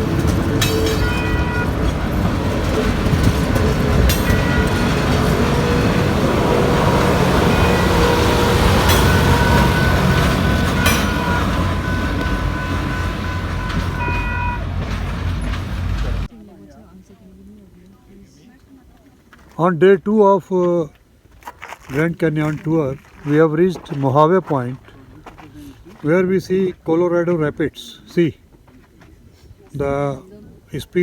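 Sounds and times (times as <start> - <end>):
sharp track clicks: 0.0 - 16.3
train rumble and rattle: 0.0 - 16.3.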